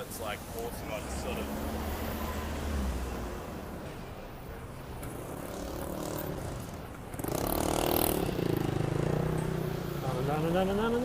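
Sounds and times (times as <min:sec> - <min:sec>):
street traffic: 0:00.0 - 0:11.0
vehicle engine droning: 0:00.7 - 0:11.0.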